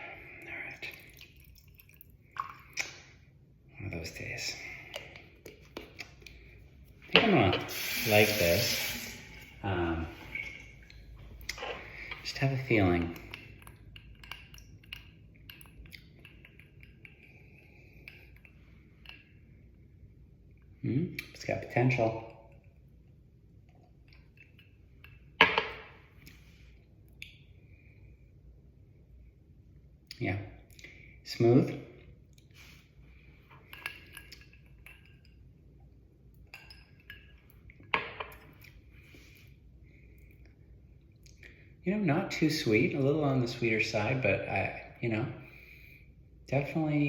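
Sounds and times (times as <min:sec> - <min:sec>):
glassware clinking: 0:36.5 - 0:37.4.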